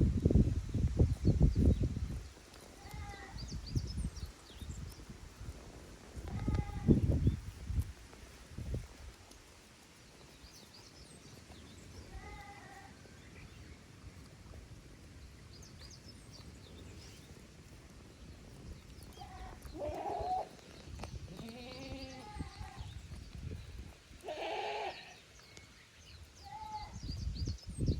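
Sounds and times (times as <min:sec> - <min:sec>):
wind rumbling on microphone: 0:00.0 - 0:25.2, 0:25.8 - 0:27.9
small birds chirping: 0:00.4 - 0:27.9
goats bleating: 0:02.8 - 0:03.4, 0:19.2 - 0:20.6, 0:21.3 - 0:22.8, 0:24.2 - 0:25.2.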